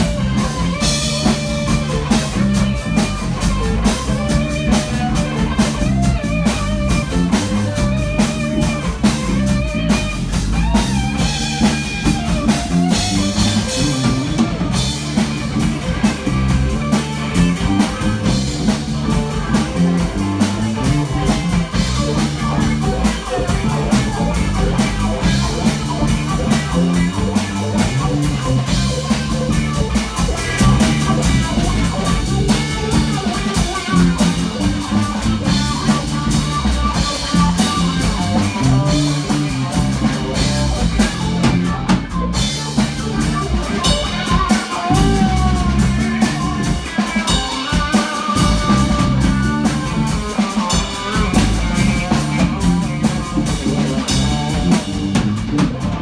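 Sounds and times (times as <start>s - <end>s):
rock band playing: 0.0s - 56.0s.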